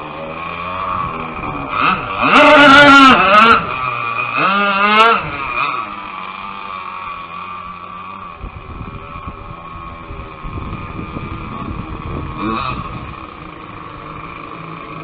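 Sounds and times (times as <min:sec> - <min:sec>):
boat engine whining at high revs: 0:00.0 - 0:15.0.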